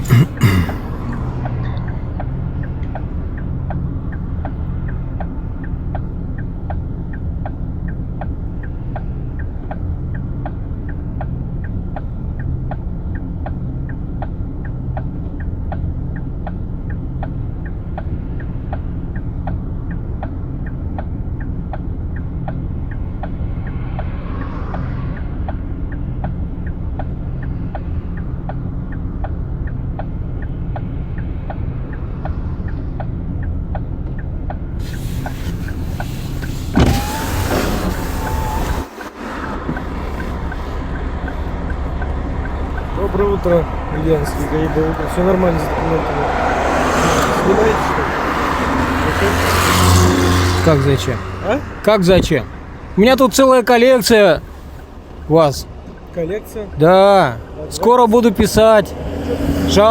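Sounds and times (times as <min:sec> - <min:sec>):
car engine and road rumble: 0:00.0 - 0:59.9
turn signal ticking: 0:00.0 - 0:59.9
hiss: 0:34.8 - 0:41.5.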